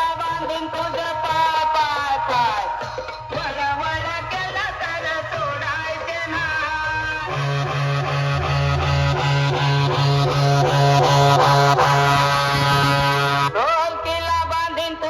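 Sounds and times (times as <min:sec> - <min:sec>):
loud dj music with bass: 0:07.3 - 0:13.6.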